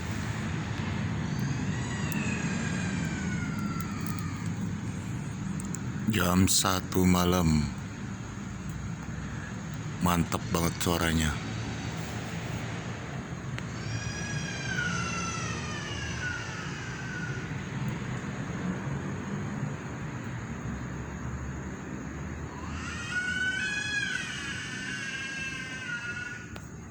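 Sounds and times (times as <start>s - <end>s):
long wailing calls: 0.0s - 7.9s, 9.1s - 12.2s, 13.7s - 17.6s, 22.4s - 26.7s.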